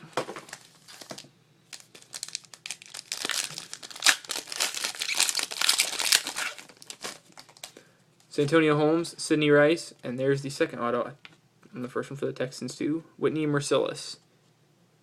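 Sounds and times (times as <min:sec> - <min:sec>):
wrapper crinkling and tearing: 0:00.5 - 0:07.8.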